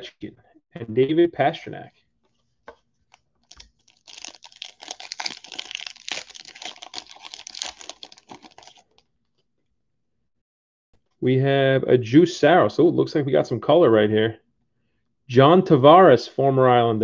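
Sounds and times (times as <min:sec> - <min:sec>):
card pack crinkling and clicking: 0:03.1 - 0:09.1.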